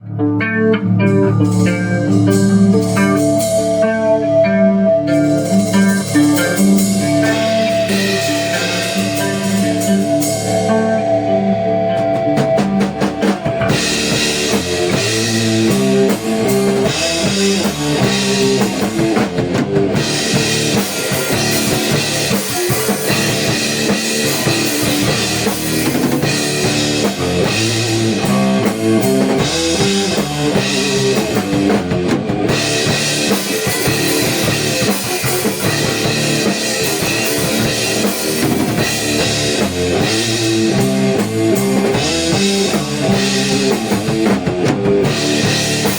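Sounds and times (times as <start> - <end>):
rock band playing: 0.0 - 45.9
drum fill: 5.2 - 10.9, 12.0 - 45.9.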